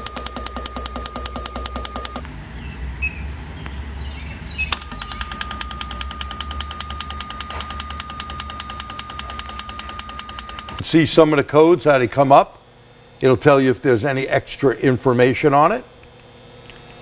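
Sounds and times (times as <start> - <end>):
rapid mechanical ticking: 0.0 - 2.2, 4.7 - 10.8
steady high whine: 4.7 - 17.0.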